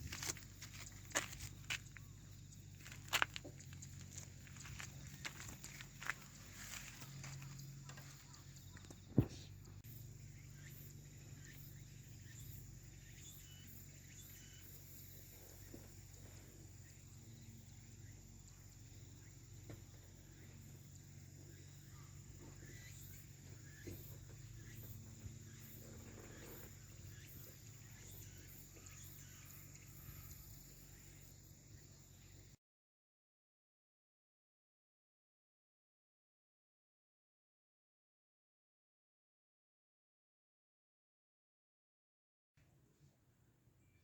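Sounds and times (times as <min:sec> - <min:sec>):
faint low hum: 0:00.0 - 0:32.6.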